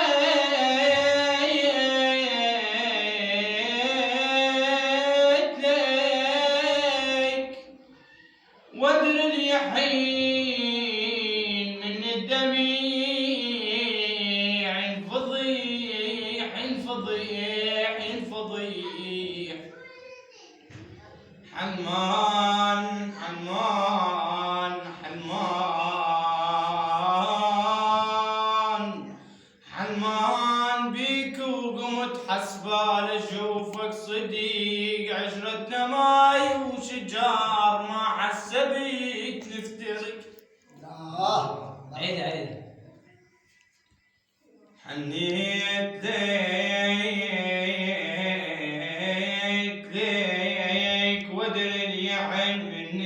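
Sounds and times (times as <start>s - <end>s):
slow mournful song: 21.5s - 41.0s
singer breathing: 29.2s - 29.7s.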